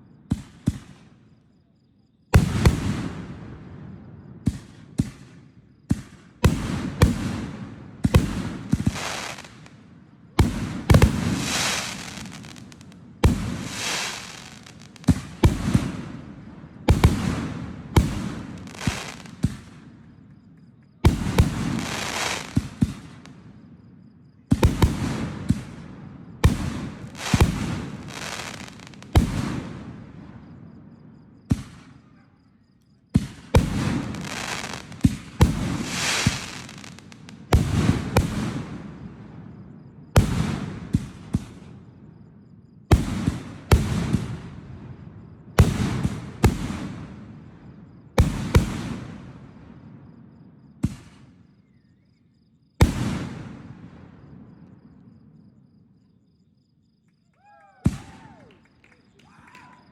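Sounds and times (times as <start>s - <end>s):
fireworks bursting: 2.4s - 3.8s, 4.4s - 20.2s, 21.0s - 23.6s, 24.5s - 30.6s, 33.2s - 41.8s, 43.0s - 45.0s, 45.6s - 47.5s, 48.1s - 50.0s, 52.8s - 54.5s.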